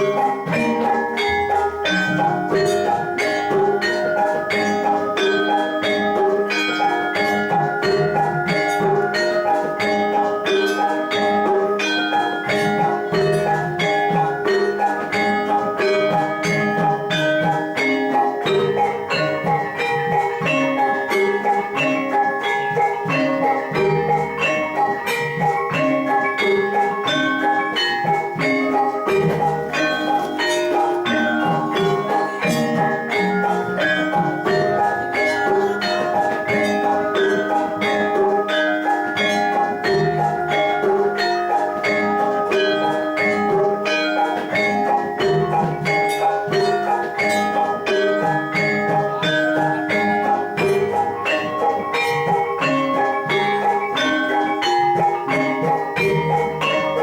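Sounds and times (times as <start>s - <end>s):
gamelan metallophones and gongs: 0.0s - 57.0s.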